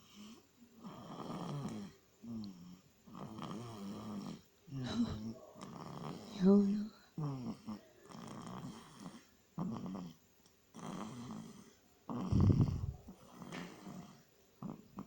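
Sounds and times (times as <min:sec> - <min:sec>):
person snoring: 0:10.8 - 0:14.8.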